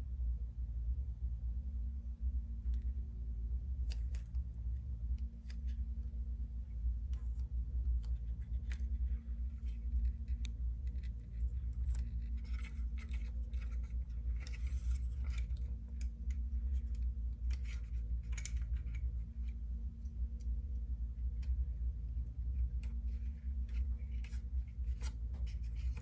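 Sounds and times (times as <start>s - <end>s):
steady low hum: 0.0s - 26.0s
electrical tape clicks and scrapes: 3.8s - 20.6s, 22.6s - 26.0s.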